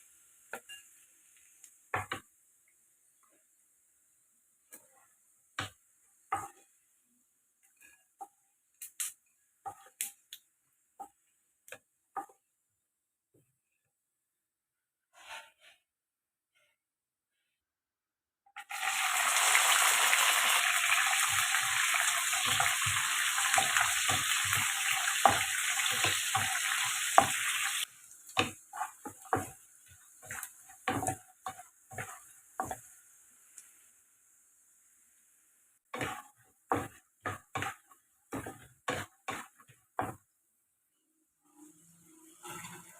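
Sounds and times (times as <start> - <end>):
food sizzling in a pan: 0.0 - 12.5, 18.6 - 42.9
spatula scraping a pan: 4.7 - 6.9, 7.6 - 8.5, 9.6 - 10.0, 15.1 - 15.9, 20.2 - 33.0, 35.8 - 40.2, 41.4 - 42.9.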